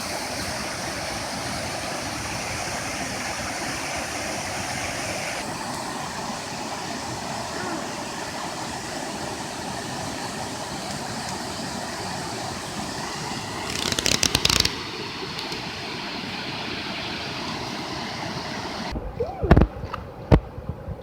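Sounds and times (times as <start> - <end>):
small waterfall rushing: 0.0 - 18.9
loud rapid crackling: 13.6 - 14.8.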